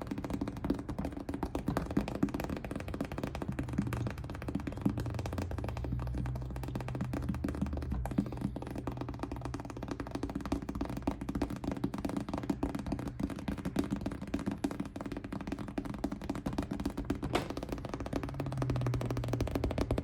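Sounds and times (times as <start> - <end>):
rapid patter of taps and clicks: 0.0 - 20.0.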